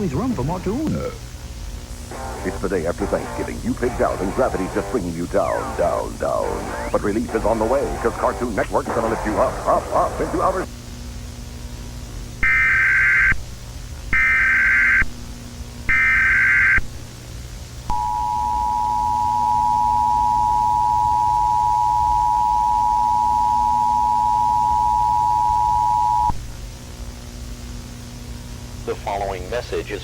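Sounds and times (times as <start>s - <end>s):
digital data bursts: 2.1s - 10.7s.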